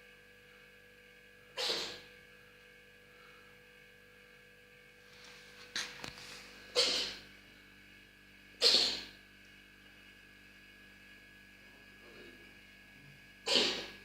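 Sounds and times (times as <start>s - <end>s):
faint mains hum: 0.0s - 14.0s
cat sneezing: 1.6s - 2.1s, 6.7s - 7.2s, 8.6s - 9.2s, 13.4s - 14.0s.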